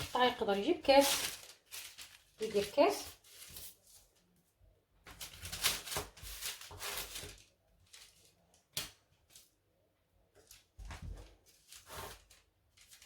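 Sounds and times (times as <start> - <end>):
dough rustling scrapes: 0.0 - 4.2, 5.4 - 7.4, 11.1 - 13.0.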